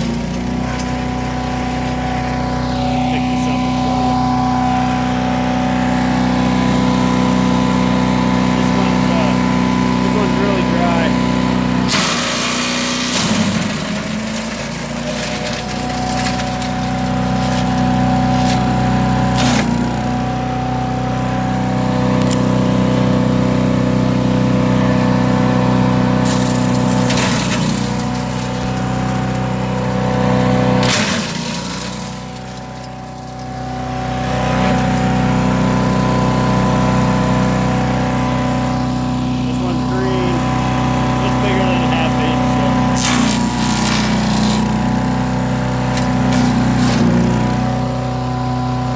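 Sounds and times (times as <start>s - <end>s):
chipper shredder running: 0.0s - 48.9s
branches cracking in cutters: 11.8s - 20.0s, 26.2s - 33.7s, 42.3s - 47.8s.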